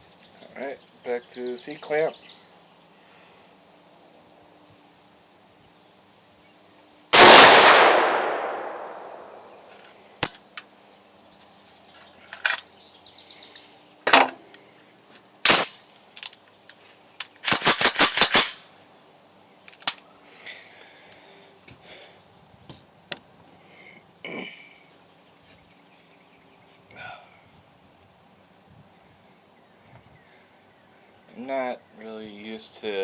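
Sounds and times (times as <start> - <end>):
rifle shot echoing: 7.2 - 9.7.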